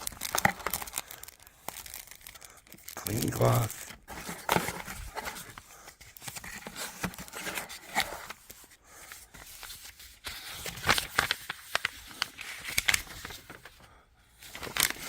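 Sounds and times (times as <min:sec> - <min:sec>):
packaging rustling and crinkling: 0:00.0 - 0:15.0.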